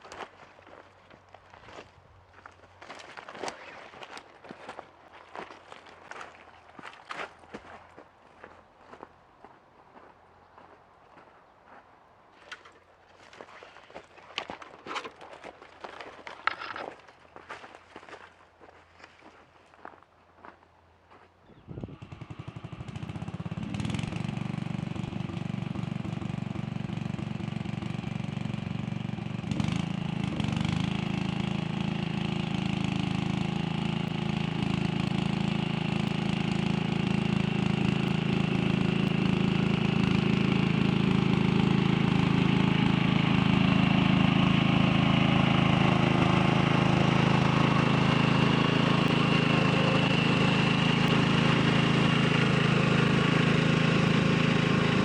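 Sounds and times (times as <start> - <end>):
engine starting and running: 13.4 - 17.2, 21.6 - 55.0.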